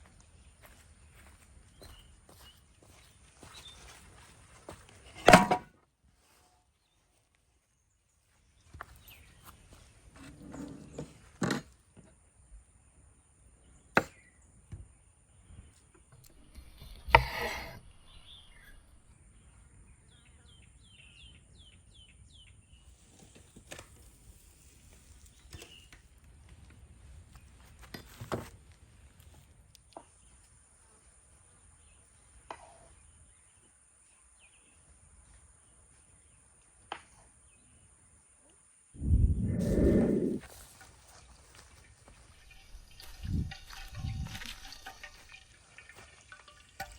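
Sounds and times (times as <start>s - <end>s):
bird chirping: 17.7s - 22.9s.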